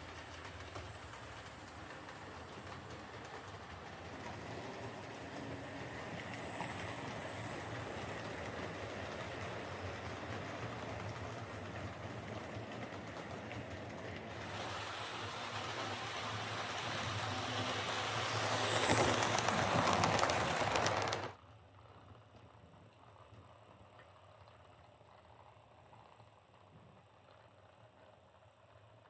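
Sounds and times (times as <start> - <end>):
model train motor whirring: 0.0 - 21.4
model train wheels rolling: 0.0 - 22.1.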